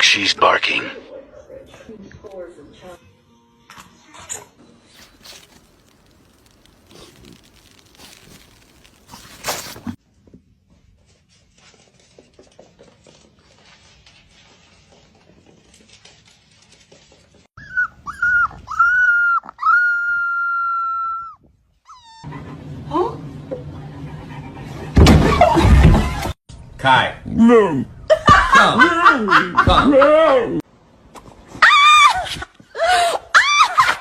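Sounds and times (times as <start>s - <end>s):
faint clicks and scuffles: 5.0s - 10.0s
rustling: 5.0s - 10.0s.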